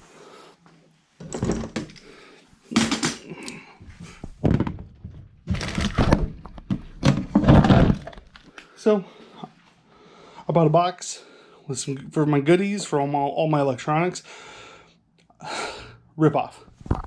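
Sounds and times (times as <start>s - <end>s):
hollow plastic thunks: 3.8s - 8.4s.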